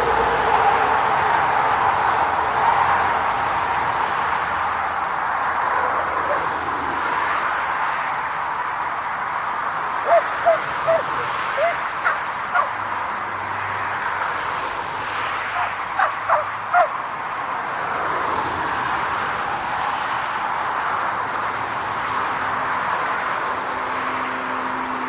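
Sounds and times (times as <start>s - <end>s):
high animal calls: 10.0s - 12.8s, 15.5s - 17.0s.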